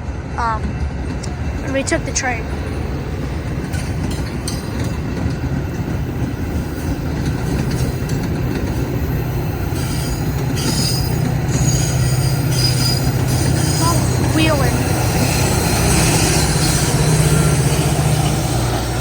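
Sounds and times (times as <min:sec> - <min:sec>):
train rumbling on rails: 0:00.0 - 0:19.0
steel wheel squeal: 0:08.8 - 0:19.0.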